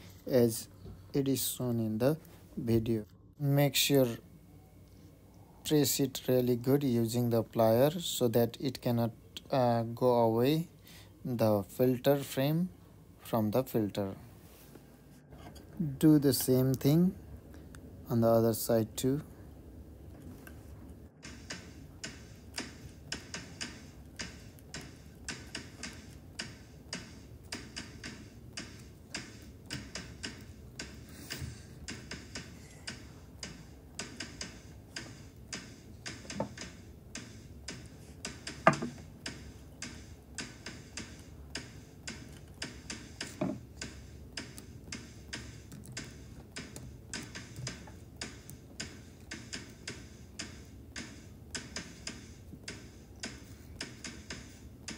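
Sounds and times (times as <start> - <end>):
steady ticking: 21.2 - 54.9
sharp knock: 31.9 - 54.9.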